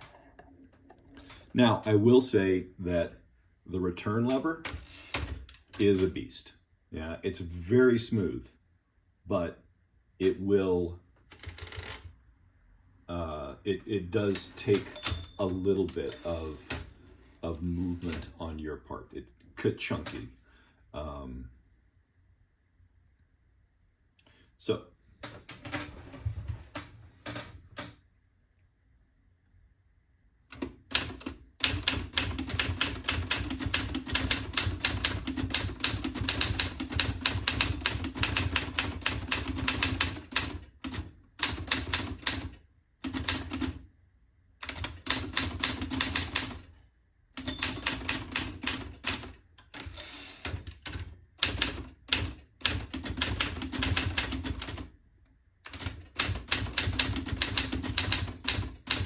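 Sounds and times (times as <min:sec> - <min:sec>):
manual typewriter typing: 0:04.3 - 0:06.2, 0:11.3 - 0:12.1, 0:30.5 - 0:43.8, 0:44.6 - 0:46.7, 0:47.4 - 0:54.9, 0:55.7 - 0:59.0.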